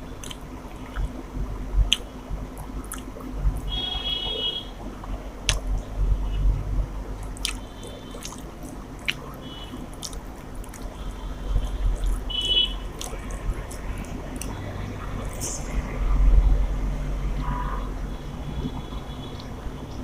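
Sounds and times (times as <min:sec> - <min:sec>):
chewing food: 0:00.0 - 0:01.2, 0:01.8 - 0:03.8, 0:05.0 - 0:06.0, 0:07.1 - 0:15.8
mouth clicks: 0:00.1 - 0:01.2, 0:01.8 - 0:03.8, 0:05.0 - 0:05.9, 0:07.2 - 0:15.9.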